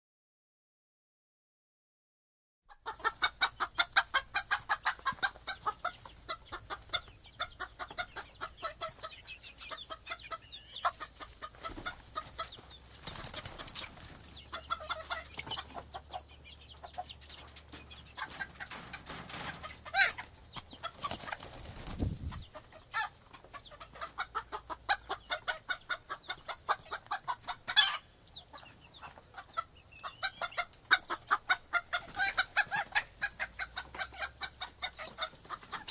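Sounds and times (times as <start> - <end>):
hens clucking: 2.7 - 35.9.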